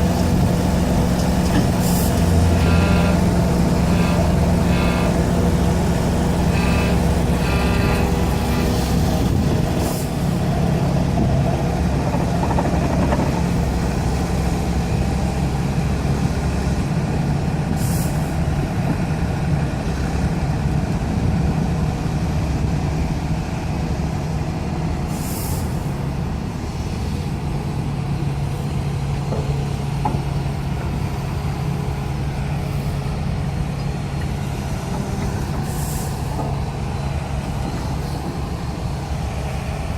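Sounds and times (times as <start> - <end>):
pile driver humming vibration: 0.0 - 16.4
short hydraulic hisses: 25.1 - 26.0, 35.6 - 36.4.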